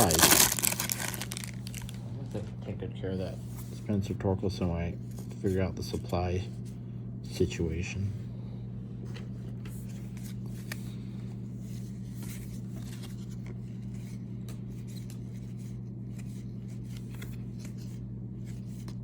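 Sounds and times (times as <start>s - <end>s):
cards rustling and ticking: 0.0s - 2.5s, 9.1s - 11.0s, 11.6s - 19.0s
steady low hum: 0.0s - 19.0s.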